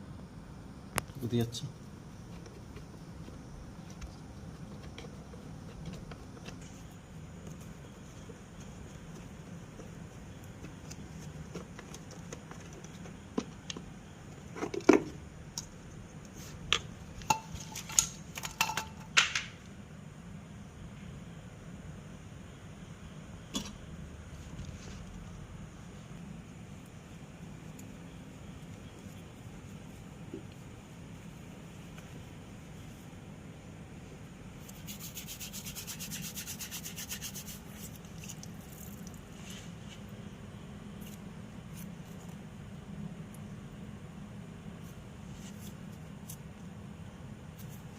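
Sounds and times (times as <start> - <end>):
steady low hum: 0.0 - 47.9
scrubbing by hand: 34.6 - 39.5.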